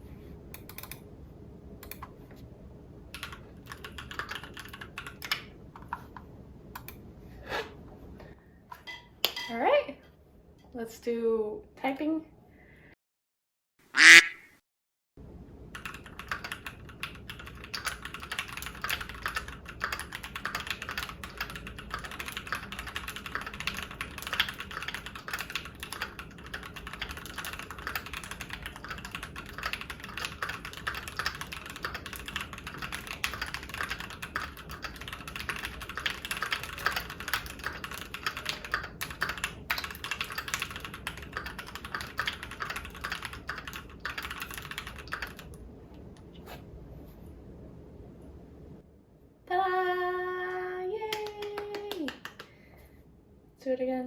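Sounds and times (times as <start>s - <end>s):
mechanical keyboard typing: 0.6s - 1.0s, 3.1s - 6.0s, 15.8s - 45.6s, 51.2s - 52.5s.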